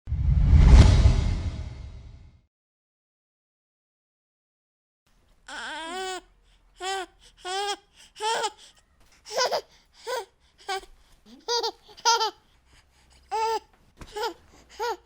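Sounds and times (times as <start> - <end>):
baby laughing: 6.8 - 12.5, 13.3 - 15.0.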